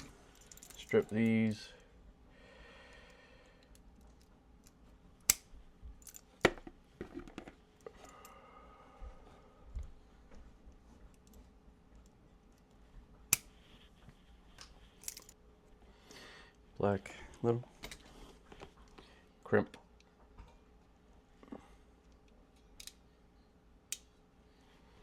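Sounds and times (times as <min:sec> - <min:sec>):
tool handling clicks: 0:14.6 - 0:15.4, 0:22.1 - 0:23.0.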